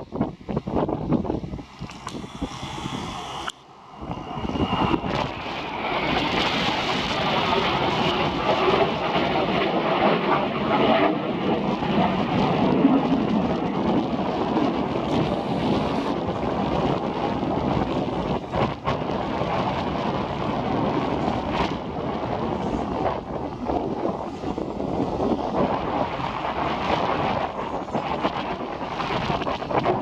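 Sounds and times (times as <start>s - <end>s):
wind buffeting microphone: 0.0s - 30.0s.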